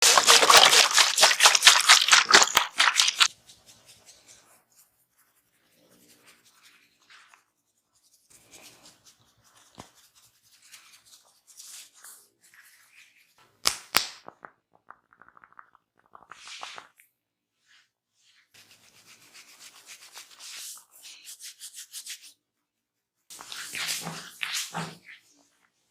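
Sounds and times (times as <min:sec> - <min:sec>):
hands rubbing hair: 0:00.0 - 0:07.4, 0:16.1 - 0:16.9, 0:18.3 - 0:22.4, 0:23.3 - 0:25.5.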